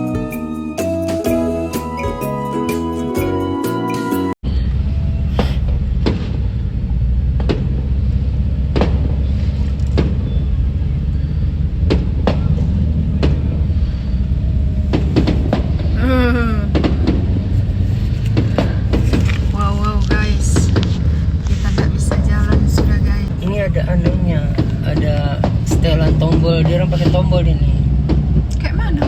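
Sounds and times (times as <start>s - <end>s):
low rumble: 4.4s - 29.0s
fireworks bangs: 5.2s - 16.0s, 16.6s - 29.0s.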